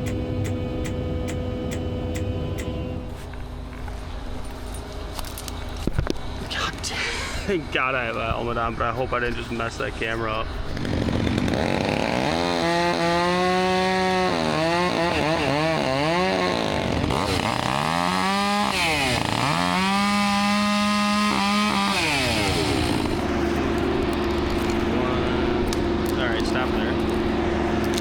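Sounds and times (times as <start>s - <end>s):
chainsaw cutting wood: 10.7s - 25.0s.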